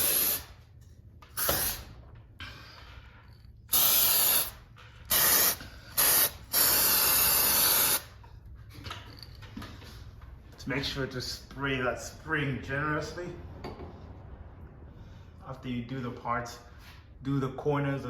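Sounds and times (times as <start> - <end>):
aerosol can spraying: 0.0 - 0.5, 1.4 - 1.9, 3.7 - 8.0.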